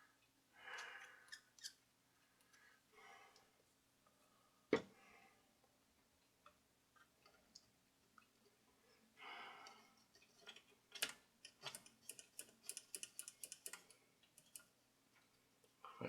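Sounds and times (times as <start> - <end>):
rapid light ticks: 9.6 - 15.8.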